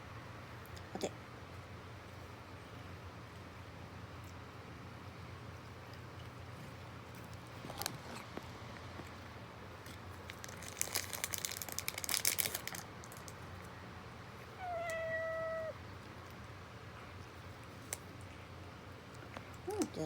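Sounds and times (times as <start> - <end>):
treat packet crinkling: 9.8 - 13.6
cat meowing: 14.6 - 15.8.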